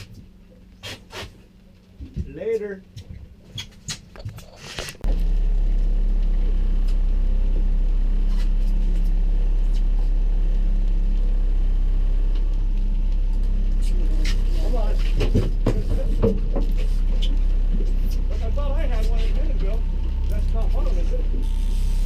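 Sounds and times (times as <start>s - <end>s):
boat motor running: 5.0s - 22.0s.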